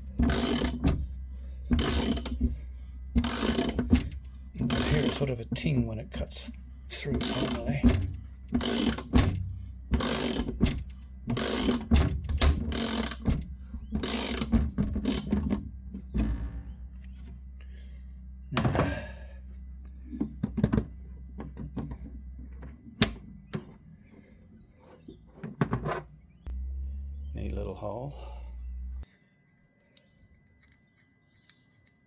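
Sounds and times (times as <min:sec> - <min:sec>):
metal knocks and clicks: 0:00.0 - 0:02.6, 0:03.2 - 0:05.8, 0:07.0 - 0:17.3, 0:20.1 - 0:23.8
wrench clicking strokes: 0:00.2 - 0:01.0, 0:01.8 - 0:02.4, 0:03.2 - 0:05.3, 0:06.5 - 0:09.4, 0:10.0 - 0:15.3.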